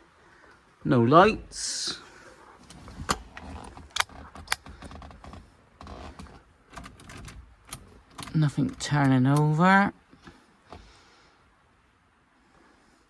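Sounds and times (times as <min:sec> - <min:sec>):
keys jangling in ignition lock: 0:06.7 - 0:08.8.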